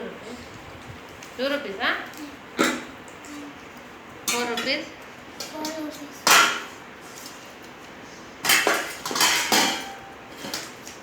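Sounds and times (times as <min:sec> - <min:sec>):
plates clattering: 0:06.3 - 0:06.7, 0:08.4 - 0:10.7.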